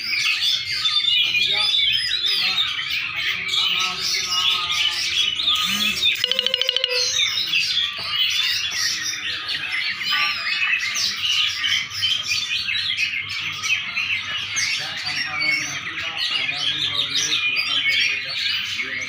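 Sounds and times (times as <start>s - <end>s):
songbird chirps and trills: 2.4s - 10.4s.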